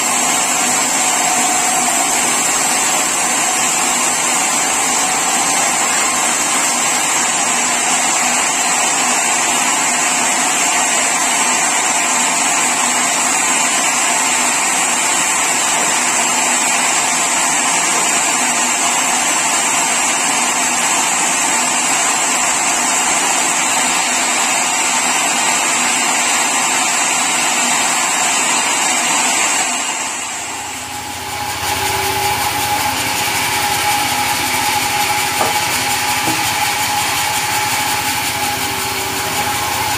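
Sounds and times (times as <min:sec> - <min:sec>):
machine humming: 0:00.0 - 0:08.6, 0:29.8 - 0:39.9
saw cutting timber: 0:00.0 - 0:39.9.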